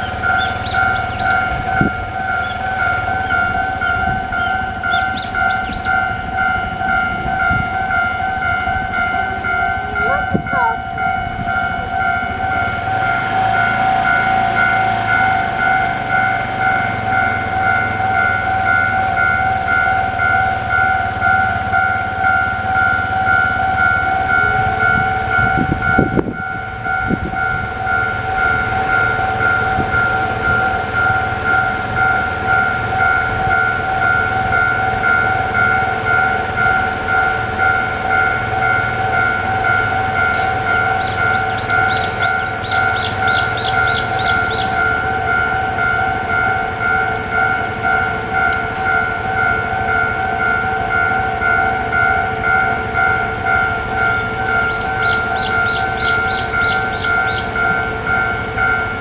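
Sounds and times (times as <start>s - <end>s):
level crossing warning bell: 0.0s - 59.0s.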